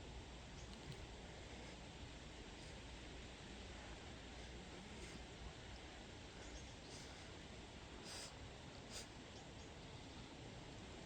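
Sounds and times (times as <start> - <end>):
faint background hiss: 0.0 - 11.0
faint clicks: 0.6 - 1.0.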